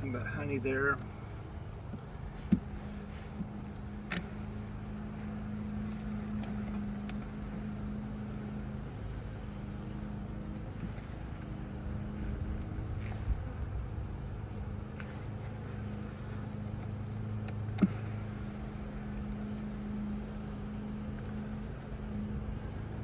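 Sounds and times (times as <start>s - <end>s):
honeybees buzzing: 0.0s - 23.0s
light clicks of wooden frames: 1.8s - 4.5s.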